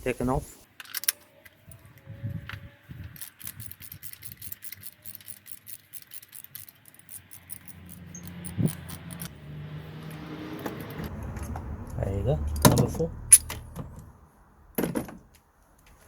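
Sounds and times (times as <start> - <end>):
ratchet clicking: 3.0 - 9.3.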